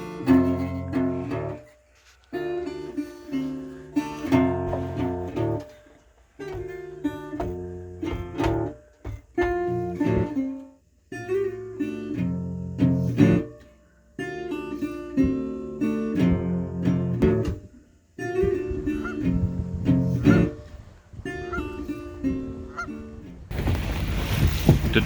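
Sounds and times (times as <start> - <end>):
strummed acoustic guitar: 0.0 - 25.0.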